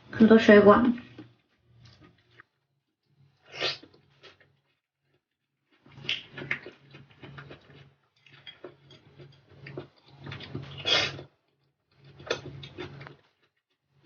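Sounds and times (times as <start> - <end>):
wet chewing: 5.7 - 11.3.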